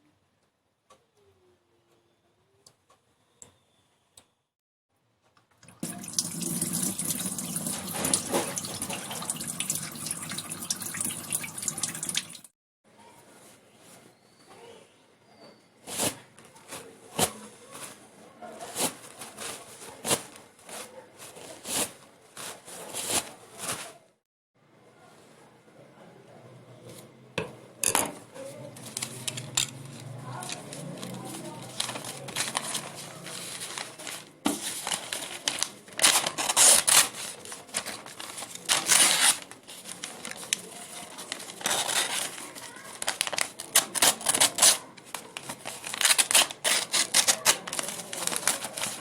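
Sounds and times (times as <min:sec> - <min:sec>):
water running from a tap: 0:05.6 - 0:12.5.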